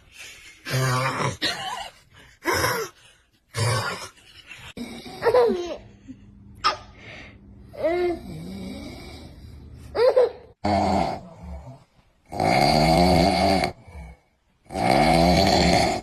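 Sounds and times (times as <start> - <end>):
man snoring loudly: 8.1 - 9.4, 10.6 - 16.0.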